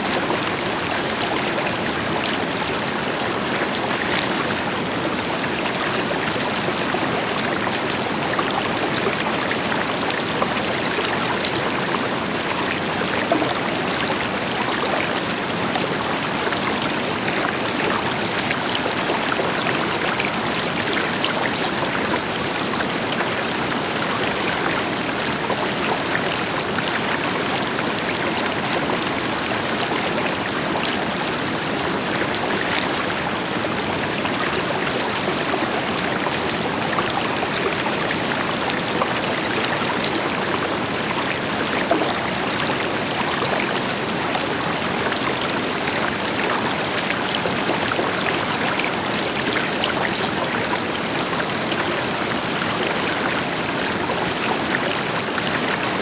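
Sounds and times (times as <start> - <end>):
river flowing over rocks: 0.0 - 56.0
small water splashes: 12.7 - 15.4.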